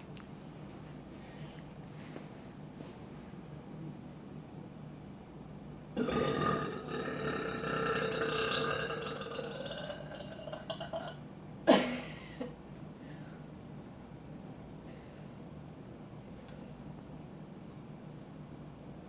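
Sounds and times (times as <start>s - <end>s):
woman burping: 6.0s - 12.5s.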